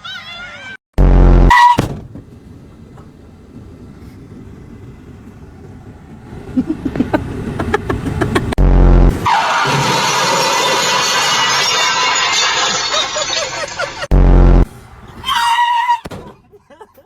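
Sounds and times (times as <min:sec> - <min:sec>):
steady car rumble: 0:01.0 - 0:17.0
knocks and clatter: 0:01.7 - 0:08.6.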